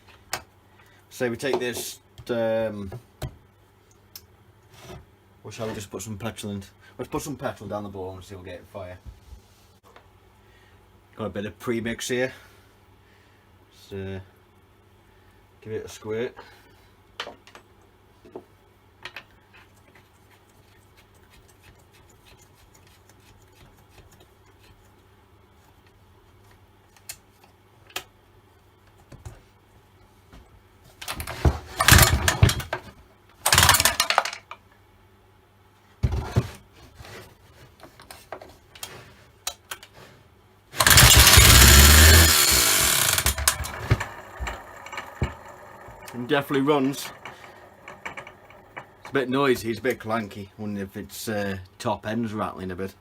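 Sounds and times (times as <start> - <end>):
chainsaw starter cord pulled: 31.0 - 32.6, 33.5 - 34.3, 40.8 - 49.2
chainsaw engine running loudly: 40.8 - 47.6.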